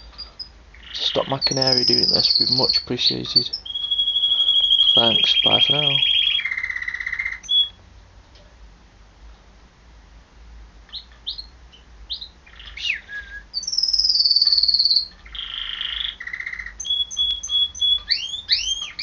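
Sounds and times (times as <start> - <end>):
canary singing: 0.0 - 7.8, 10.9 - 19.0.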